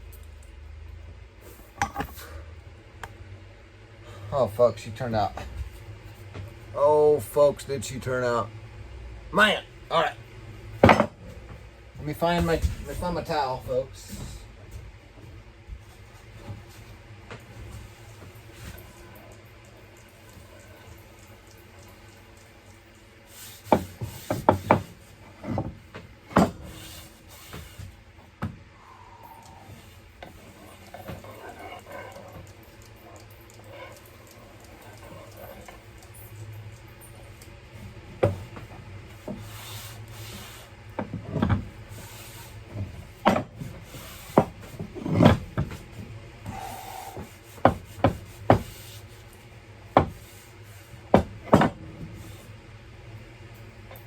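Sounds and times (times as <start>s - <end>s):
steady low hum: 0.0s - 54.0s.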